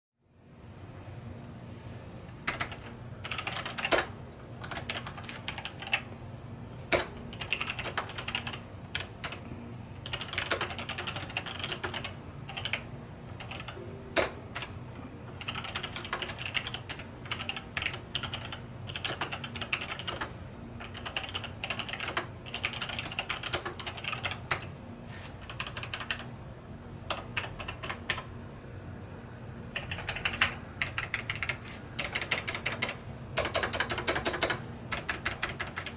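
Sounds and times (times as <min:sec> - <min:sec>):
mechanical keyboard typing: 0:02.4 - 0:06.0, 0:06.9 - 0:09.4, 0:10.0 - 0:14.8, 0:15.4 - 0:24.7, 0:25.4 - 0:26.3, 0:27.1 - 0:28.3, 0:29.8 - 0:35.9.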